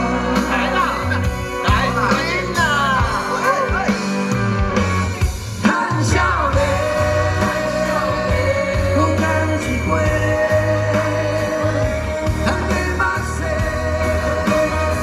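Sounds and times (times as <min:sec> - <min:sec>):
rock band playing live: 0:00.0 - 0:15.0
person singing: 0:05.6 - 0:15.0.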